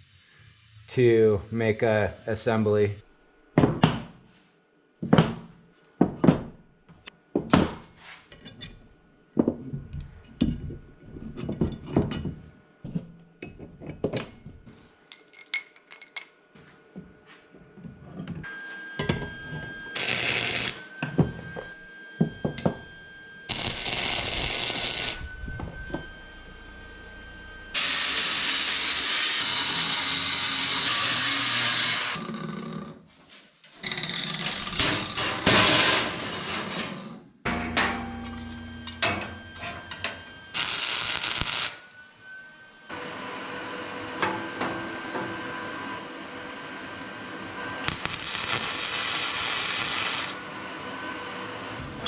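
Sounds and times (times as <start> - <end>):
power tool grinding metal: 19.9 - 21.0, 23.5 - 25.9, 27.1 - 32.3, 40.6 - 41.8, 47.6 - 50.5.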